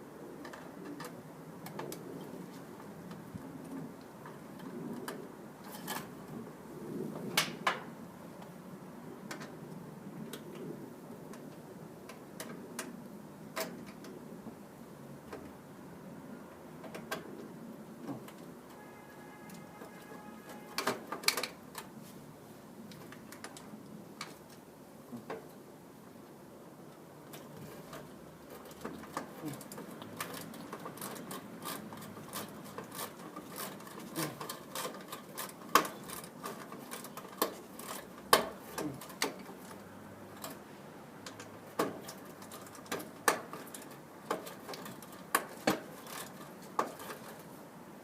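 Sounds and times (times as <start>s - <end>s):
tools and small parts clicking: 27.3s - 40.6s.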